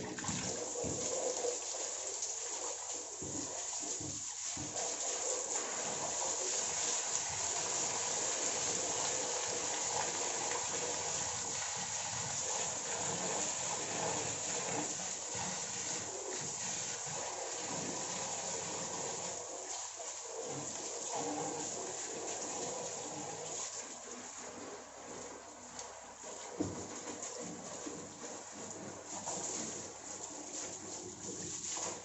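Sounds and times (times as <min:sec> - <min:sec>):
water splashing: 0:00.0 - 0:12.2
water running from a hose: 0:00.0 - 0:32.0.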